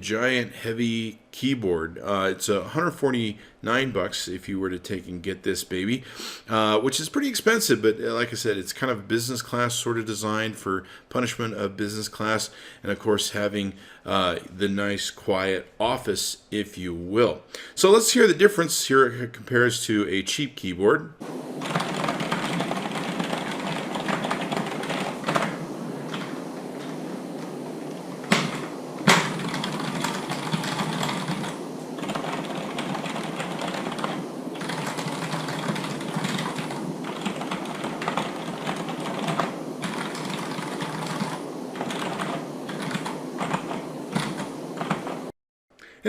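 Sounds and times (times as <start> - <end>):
fast keyboard typing: 21.2 - 45.3.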